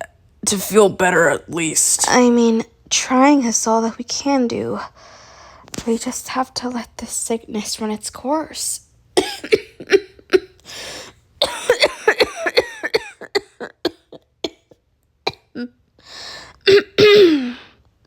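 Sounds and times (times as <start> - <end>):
person coughing: 9.2 - 10.6, 11.4 - 15.7, 16.6 - 17.7.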